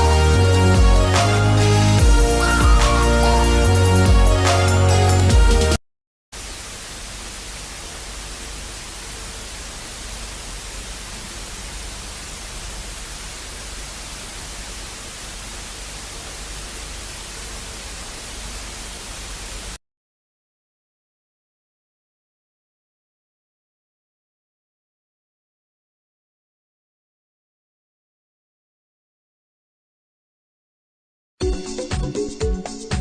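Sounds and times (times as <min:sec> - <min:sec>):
music: 0:00.0 - 0:05.8, 0:31.4 - 0:33.0
steady static hiss: 0:06.4 - 0:19.8.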